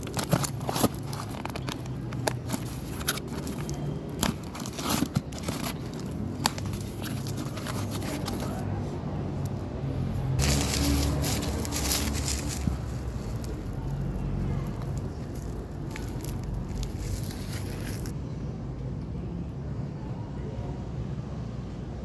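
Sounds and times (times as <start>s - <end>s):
wrapping crinkling and tearing: 0.0s - 8.6s, 10.4s - 18.1s
clicks and scrapes: 0.0s - 8.8s.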